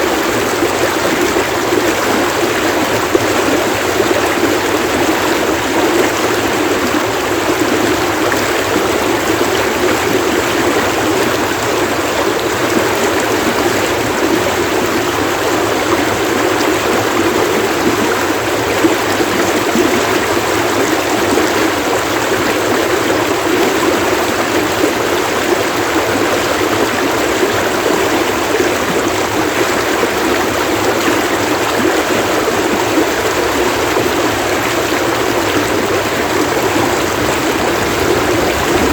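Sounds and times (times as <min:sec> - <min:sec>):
stream water splashing: 0:00.0 - 0:38.9.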